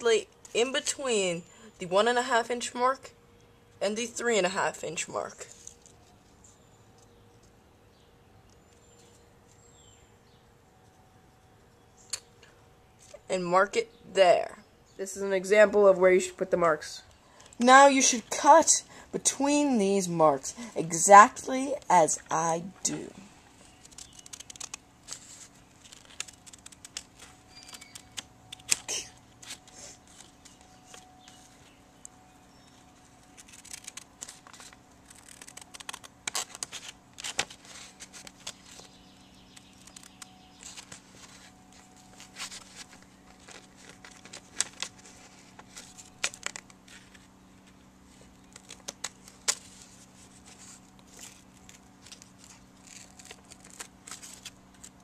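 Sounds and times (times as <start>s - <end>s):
paper rustling: 23.6s - 31.8s, 32.9s - 55.0s
scissors cutting paper: 23.7s - 31.0s, 33.2s - 38.9s, 48.5s - 54.9s.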